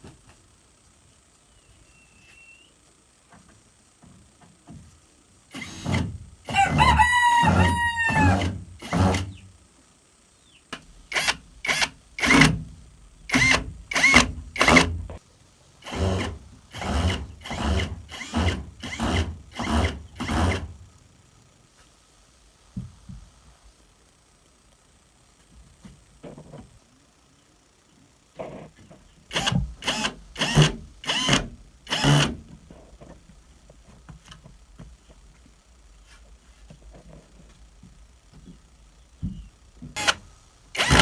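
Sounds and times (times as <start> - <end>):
noisy hand-tool strokes: 5.6 - 6.1, 7.4 - 9.4, 11.1 - 12.6, 13.3 - 15.0, 15.8 - 20.8, 29.3 - 32.4, 40.0 - 40.2, 40.8 - 41.0
rooster crowing: 6.5 - 8.6.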